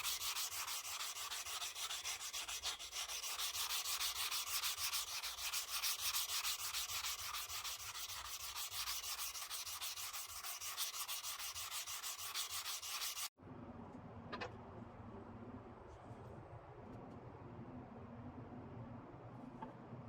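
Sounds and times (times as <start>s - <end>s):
hand sanding on steel: 0.0s - 13.3s
faint low hum: 13.4s - 20.0s.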